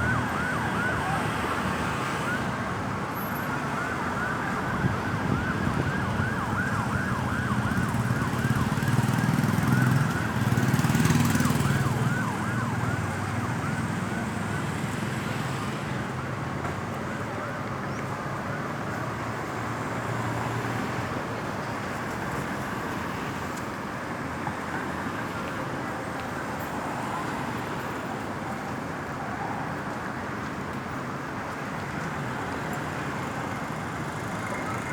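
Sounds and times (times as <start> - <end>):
ambulance siren yelping: 0.0 - 15.5, 32.7 - 34.9
road traffic noise: 0.0 - 34.9.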